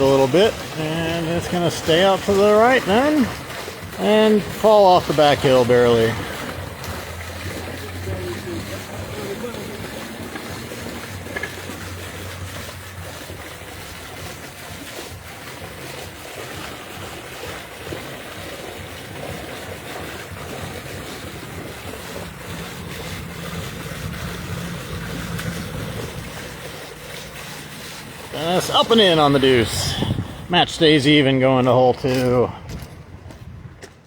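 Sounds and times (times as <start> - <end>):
steady rushing noise: 20.2 - 31.4.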